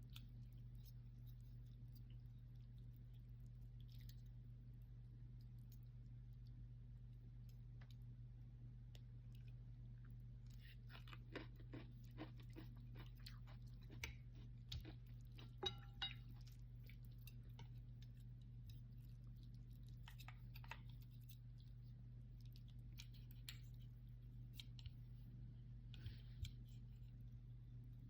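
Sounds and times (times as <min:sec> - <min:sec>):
chewing noodles: 0:00.0 - 0:04.8, 0:09.3 - 0:25.1
low steady hum: 0:00.0 - 0:28.0.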